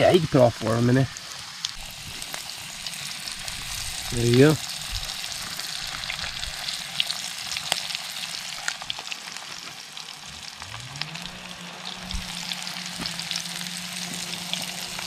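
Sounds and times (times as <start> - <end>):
fish frying in hot oil: 0.0 - 15.0
low hum: 10.3 - 15.0.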